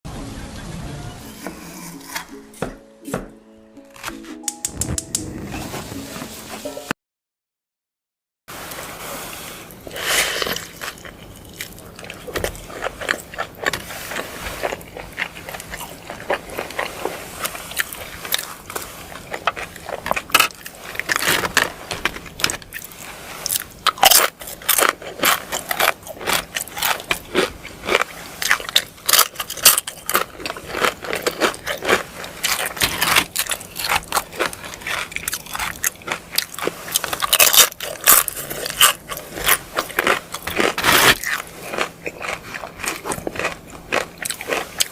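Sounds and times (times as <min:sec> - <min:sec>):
crunchy food being chewed: 0:09.7 - 0:44.9.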